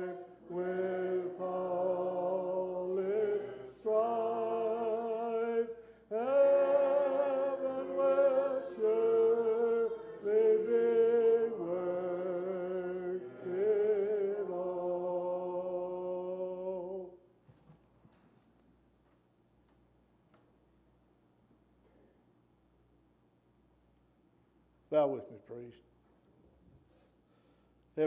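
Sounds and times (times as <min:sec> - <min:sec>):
congregation singing a hymn: 0:00.0 - 0:17.2.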